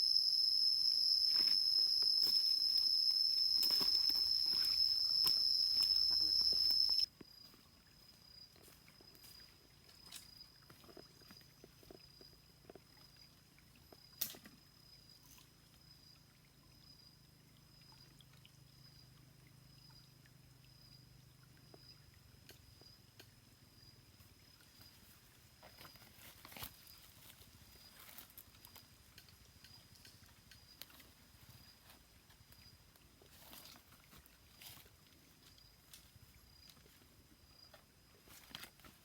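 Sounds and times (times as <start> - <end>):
faint high-pitched tone: 0.0 - 7.1.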